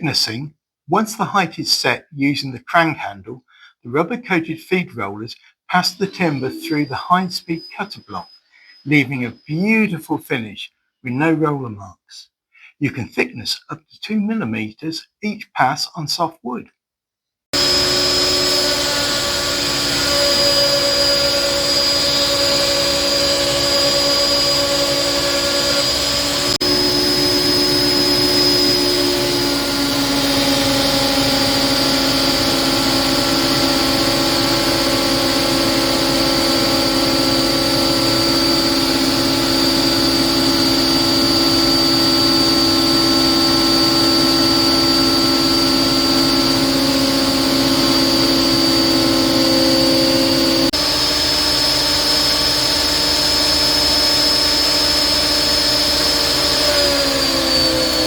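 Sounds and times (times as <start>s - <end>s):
planer thicknesser running: 5.9s - 7.5s, 17.6s - 58.0s.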